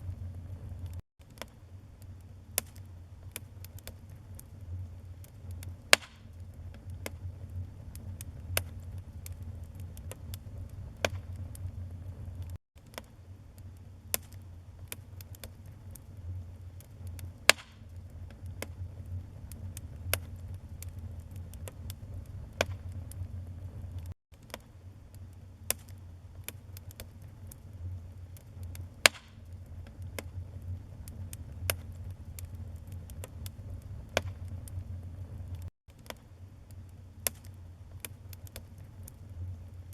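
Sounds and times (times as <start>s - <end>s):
wood fire crackling: 0.0s - 39.9s
loud pops of fire: 2.5s - 4.4s, 5.2s - 13.1s, 16.8s - 24.7s, 28.4s - 36.2s.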